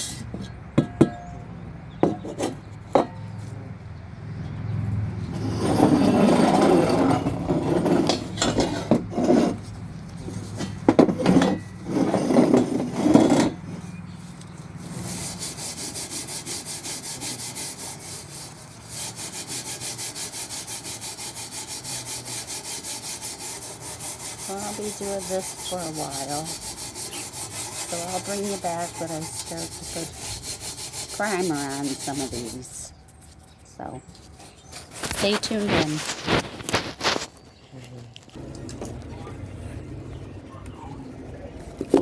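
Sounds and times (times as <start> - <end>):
rasping scrape scrubbing metal: 5.3 - 37.3.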